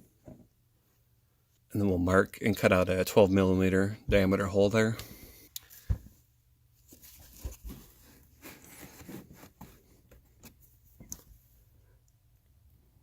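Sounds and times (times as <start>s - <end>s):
scratching and scraping on felt: 6.8s - 10.8s.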